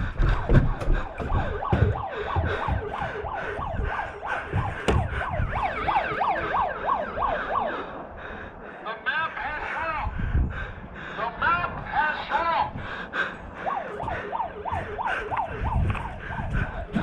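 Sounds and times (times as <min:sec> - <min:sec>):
low thumps: 0:00.0 - 0:06.7
siren wailing: 0:00.0 - 0:08.2, 0:13.4 - 0:17.0.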